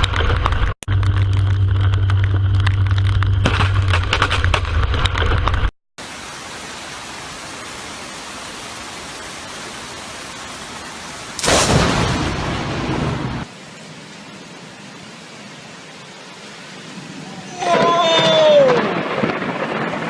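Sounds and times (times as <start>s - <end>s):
rain hissing: 6.0s - 20.0s
thunder clap: 11.4s - 13.5s, 17.7s - 20.0s.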